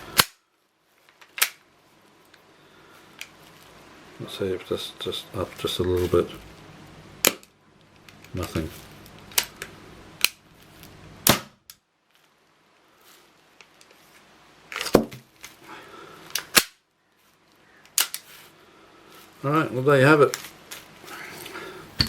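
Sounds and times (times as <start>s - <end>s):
pistol clicks: 0.1s - 0.4s.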